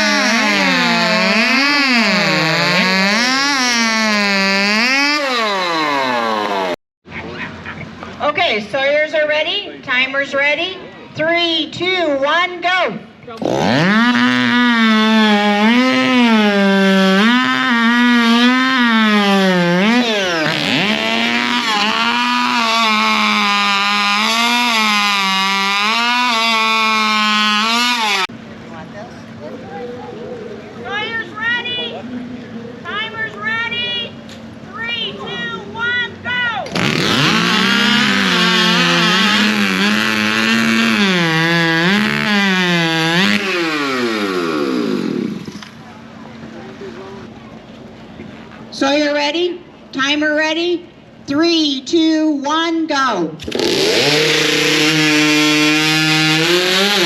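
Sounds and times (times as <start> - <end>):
chainsaw running flat out: 0.0 - 6.8, 13.4 - 28.3, 36.7 - 45.6, 53.4 - 57.0.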